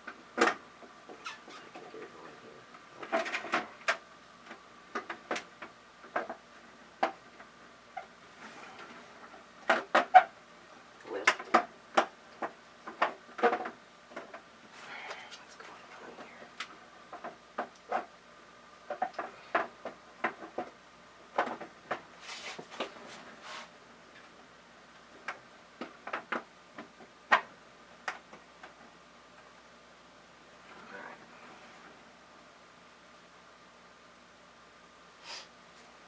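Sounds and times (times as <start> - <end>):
plastic parts clicking and knocking: 0.0 - 1.2, 3.0 - 6.4, 8.8 - 10.3, 11.2 - 14.5, 18.9 - 22.1, 25.0 - 28.9.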